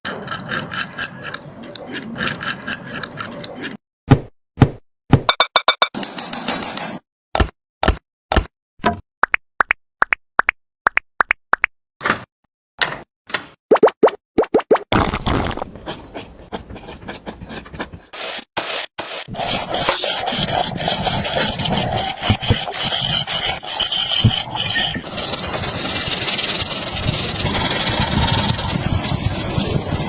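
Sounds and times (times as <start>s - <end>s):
tool scraping hard surface: 15.7s - 29.9s.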